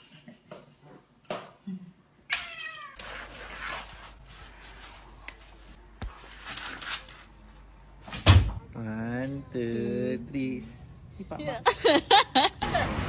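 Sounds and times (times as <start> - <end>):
cat meowing: 2.3 - 3.0.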